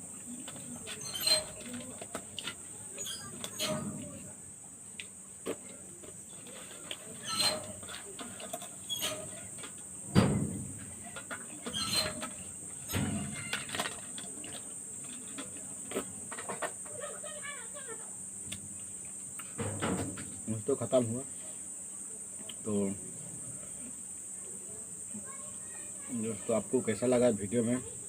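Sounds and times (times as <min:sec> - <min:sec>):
crickets chirping: 0:00.0 - 0:28.0
loud thump: 0:10.1 - 0:10.8, 0:19.6 - 0:20.4.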